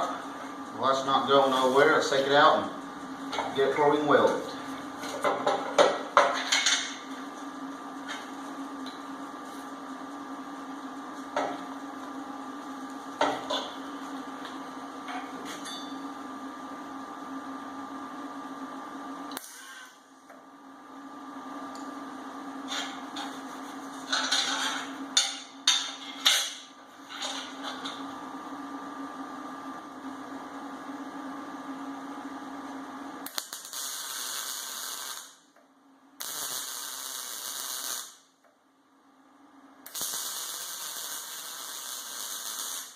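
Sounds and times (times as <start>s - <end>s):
electrical hum: 0.0s - 42.9s
welding arc crackling hiss: 0.8s - 2.6s, 19.3s - 20.0s, 33.2s - 35.4s, 36.2s - 38.3s, 39.8s - 42.9s.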